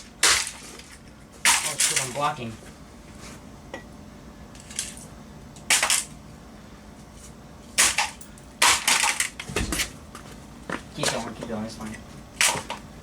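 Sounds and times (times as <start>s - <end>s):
sharp smashing blows on camcorder: 0.2s - 0.6s, 5.7s - 6.1s, 7.8s - 9.4s.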